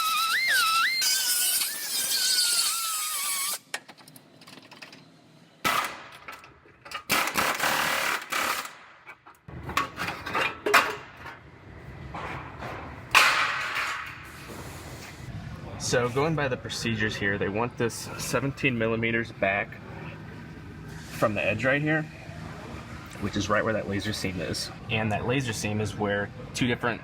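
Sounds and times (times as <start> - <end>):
power tool cutting sheet metal: 0.0 - 3.6.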